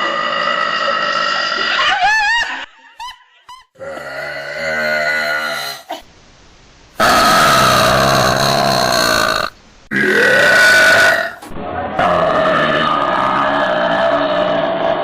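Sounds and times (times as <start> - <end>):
girls burping loudly: 0.0 - 2.0, 3.8 - 5.9.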